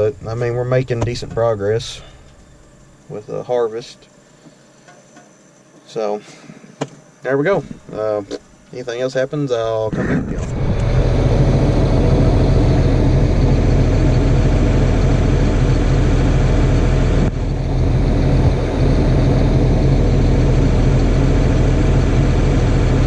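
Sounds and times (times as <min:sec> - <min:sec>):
tractor diesel engine running: 0:10.4 - 0:23.0.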